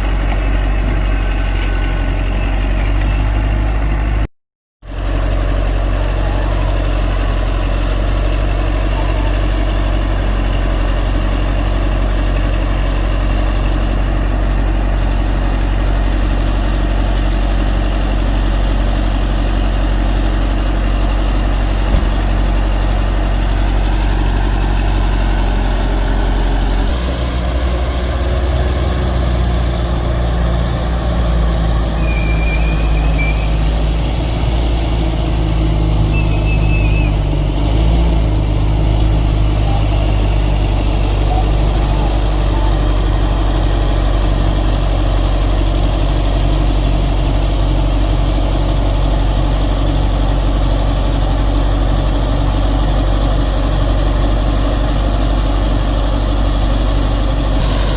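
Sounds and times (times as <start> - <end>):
heavy diesel engine droning: 0.0 - 57.9.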